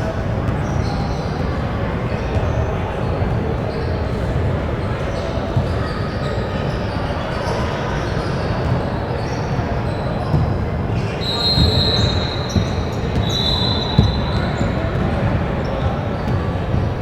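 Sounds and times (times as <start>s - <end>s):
crowd chatter: 0.0s - 17.0s
sneaker squeaks: 0.4s - 17.0s
basketball dribbling on gym floor: 11.6s - 15.4s.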